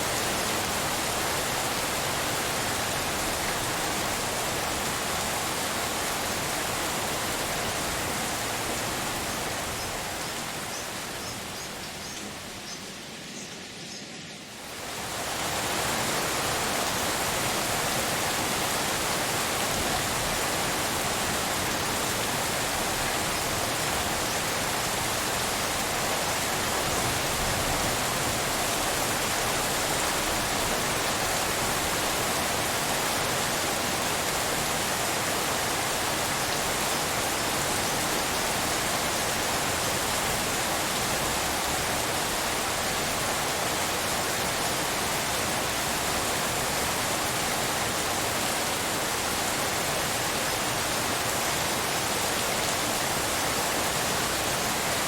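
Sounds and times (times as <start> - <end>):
steady rain hiss: 0.0 - 55.0.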